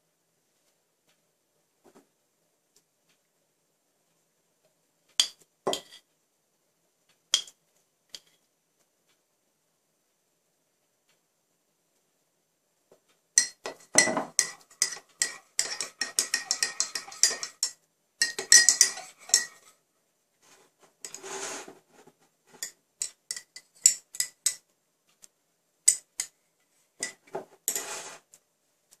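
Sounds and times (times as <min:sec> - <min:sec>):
spoon clinking against cup: 0:13.4 - 0:19.7, 0:23.0 - 0:24.6
soft scraping hush: 0:20.4 - 0:22.7, 0:27.7 - 0:28.4.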